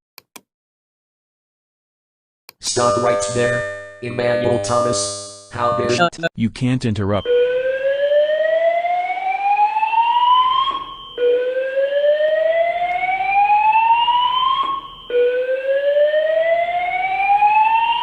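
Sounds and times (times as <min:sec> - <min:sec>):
fire alarm slow-whoop tone: 0:02.7 - 0:06.1, 0:07.2 - 0:18.0.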